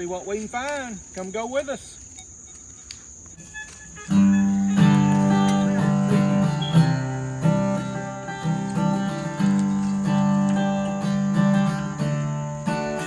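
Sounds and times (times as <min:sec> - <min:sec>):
acoustic guitar strumming chords: 0:03.4 - 0:13.0.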